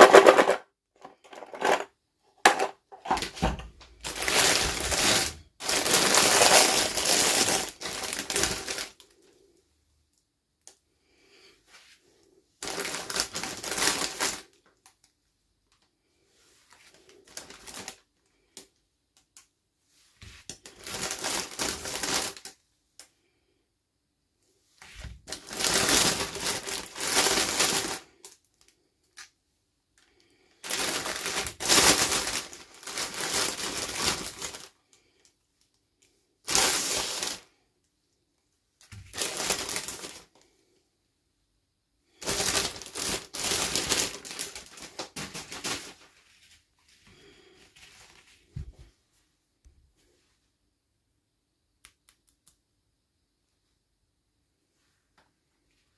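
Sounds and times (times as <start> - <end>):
plastic packaging crinkling: 0.0 - 0.6, 1.2 - 9.1, 12.6 - 14.6, 16.9 - 18.0, 20.5 - 22.6, 25.2 - 28.7, 30.6 - 34.8, 36.5 - 37.5, 38.9 - 40.3, 42.2 - 46.5.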